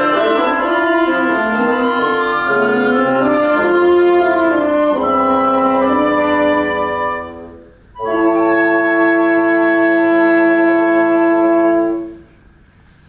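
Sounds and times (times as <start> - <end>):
wind quintet playing chords: 0.0 - 12.6.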